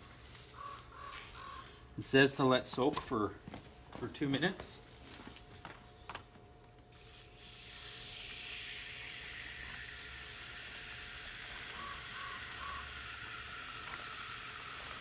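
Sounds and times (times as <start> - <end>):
aerosol can spraying hiss: 6.9 - 15.0.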